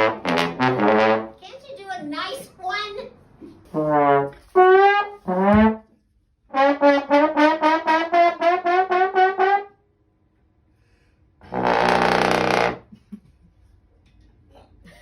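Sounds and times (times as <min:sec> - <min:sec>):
brass-like horn notes: 0:00.0 - 0:01.4, 0:03.7 - 0:09.8, 0:11.4 - 0:12.9
buzzing horn blast: 0:11.4 - 0:12.9.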